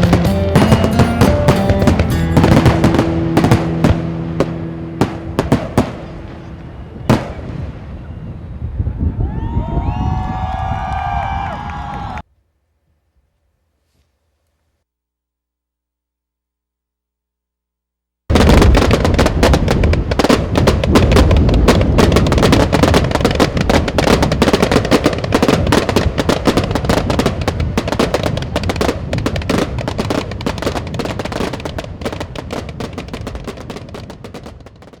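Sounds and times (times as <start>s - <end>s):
fireworks bangs and crackles: 0.0s - 9.2s, 18.3s - 35.0s.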